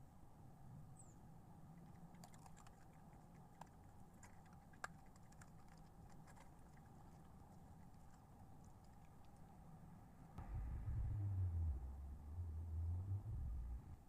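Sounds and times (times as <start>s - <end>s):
faint steady hum: 0.0s - 14.0s
small clicks and ticks: 1.8s - 9.5s.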